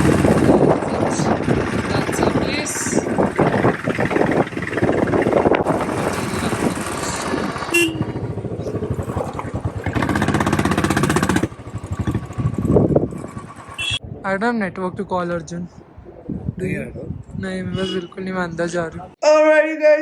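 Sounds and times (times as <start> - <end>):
motorcycle engine idling: 0.0 - 14.0.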